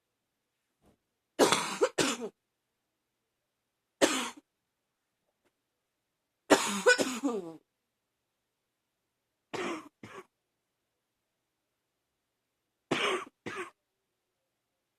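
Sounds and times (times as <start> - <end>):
woman coughing: 1.4 - 2.4, 4.0 - 4.4, 6.5 - 7.6, 12.9 - 13.8.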